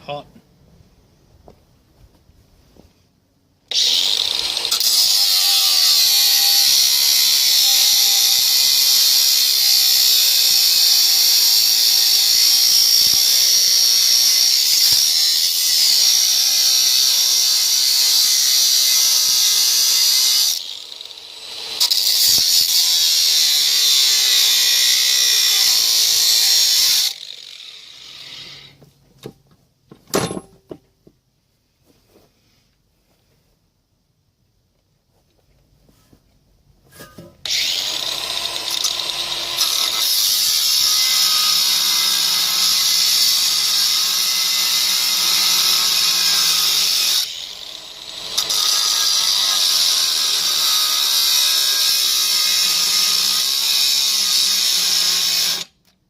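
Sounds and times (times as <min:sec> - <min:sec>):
angle grinder cutting metal: 0:03.7 - 0:28.8, 0:37.1 - 0:55.8.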